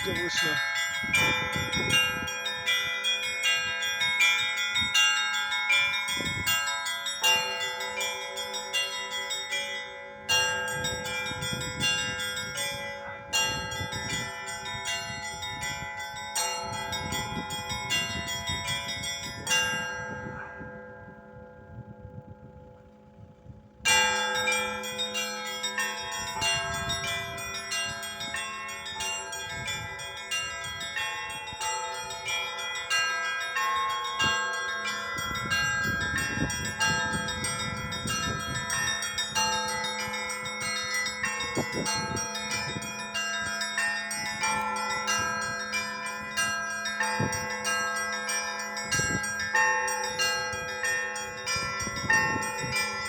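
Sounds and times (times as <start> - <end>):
bells pealing: 0.0 - 53.0.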